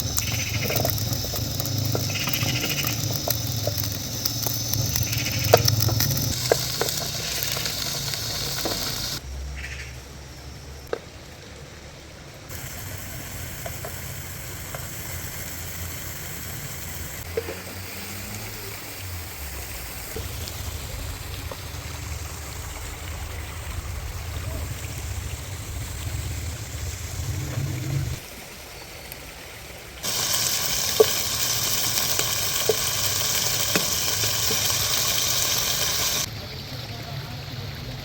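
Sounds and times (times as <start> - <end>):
low rumble: 0.0 - 6.6, 19.0 - 28.3
stream of water running: 0.0 - 9.3, 10.1 - 38.0.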